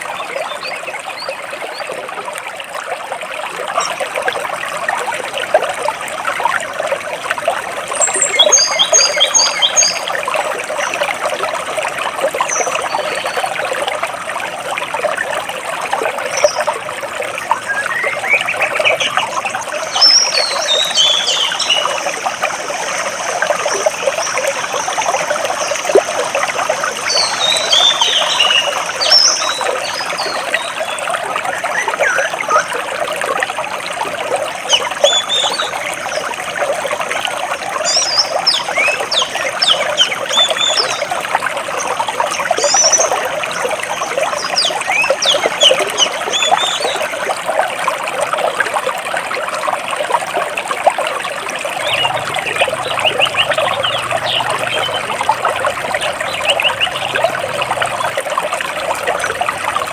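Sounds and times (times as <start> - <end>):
stream water flowing over rocks: 0.0 - 59.9
small birds chirping: 17.5 - 32.6, 51.8 - 57.3.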